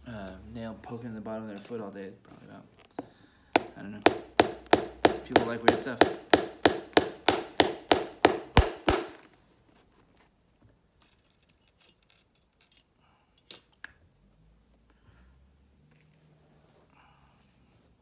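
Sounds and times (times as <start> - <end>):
hammer driving nail into sole: 3.6 - 9.3.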